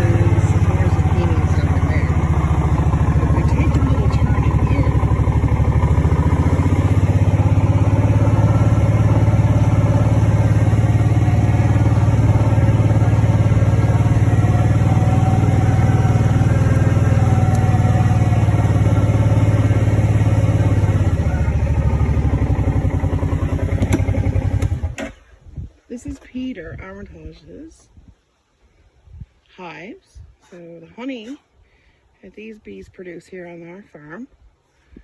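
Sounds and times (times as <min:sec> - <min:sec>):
farm vehicle engine running: 0:00.0 - 0:25.2.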